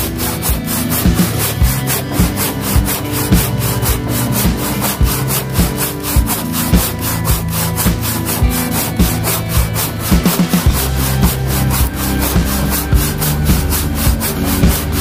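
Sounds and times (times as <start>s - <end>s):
background music with steady beat: 0.0s - 15.0s
handsaw cutting wood: 0.0s - 15.0s.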